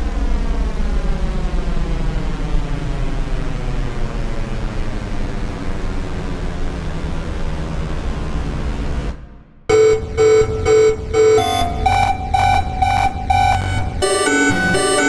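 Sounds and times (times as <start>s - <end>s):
square-wave synth beeps: 9.7s - 15.0s.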